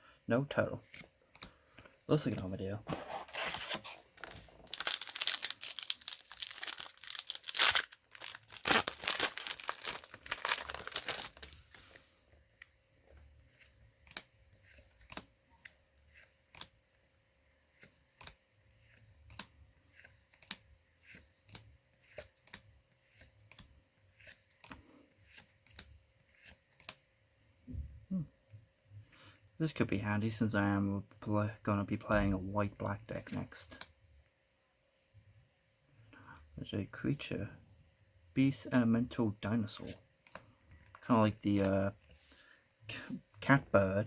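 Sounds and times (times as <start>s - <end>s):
foil wrapper tearing and crinkling: 3.3s - 11.9s.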